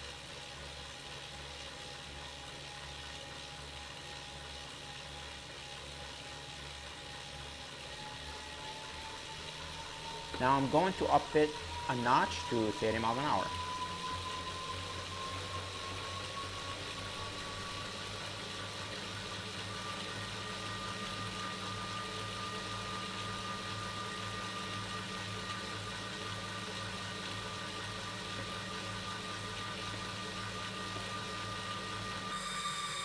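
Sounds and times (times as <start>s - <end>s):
trainer flywheel whine: 0.0s - 33.0s
low hum: 7.9s - 33.0s.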